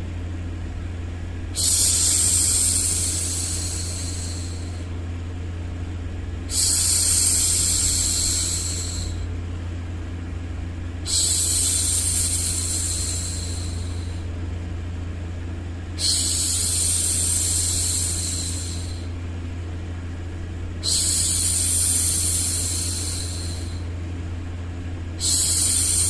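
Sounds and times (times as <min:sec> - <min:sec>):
low rumble of white noise: 0:00.0 - 0:26.0
woman shushing: 0:01.6 - 0:04.8, 0:16.0 - 0:19.1, 0:20.8 - 0:23.8, 0:25.2 - 0:26.0.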